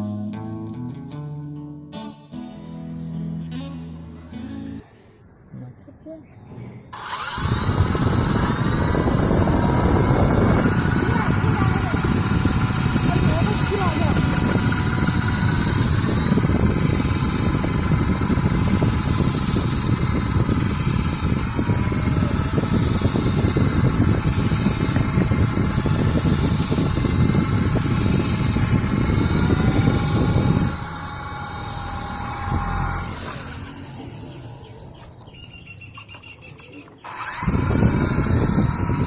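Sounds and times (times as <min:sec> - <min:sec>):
low rushing noise on microphone: 0:04.7 - 0:31.1
toy helicopter motors whining: 0:06.9 - 0:39.0.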